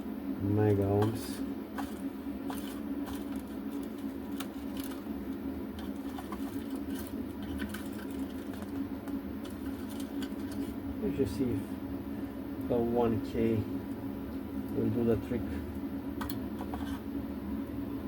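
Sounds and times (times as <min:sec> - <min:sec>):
steady low hum: 0:00.0 - 0:18.0
small components clicking and rattling: 0:01.8 - 0:10.8.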